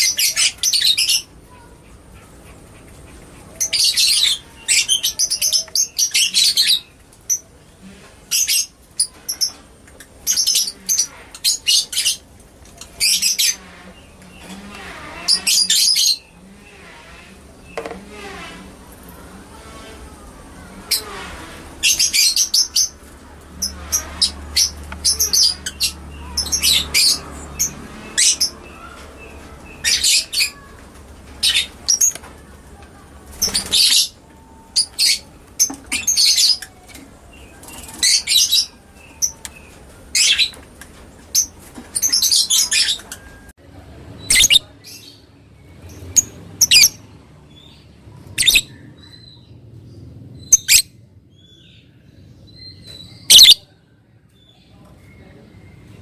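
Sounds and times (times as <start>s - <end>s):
lovebird shrill chattering: 44.3s - 44.6s, 46.6s - 47.0s, 48.4s - 48.7s, 53.2s - 53.6s.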